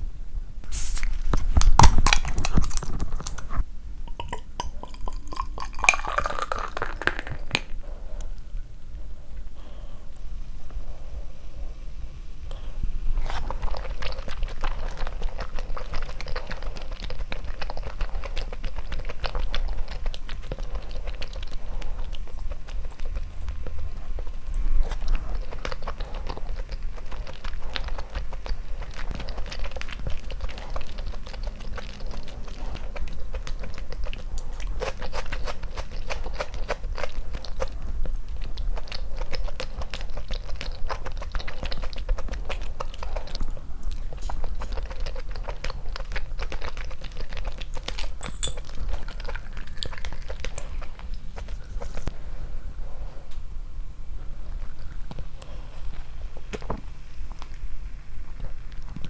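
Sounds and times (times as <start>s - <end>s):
person chewing and biting food: 0.7s - 7.8s, 13.2s - 52.1s.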